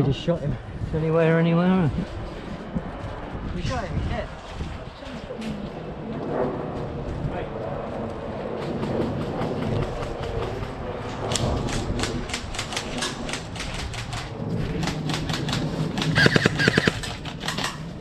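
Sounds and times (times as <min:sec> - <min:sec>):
airsoft gun shots: 0:16.0 - 0:17.8.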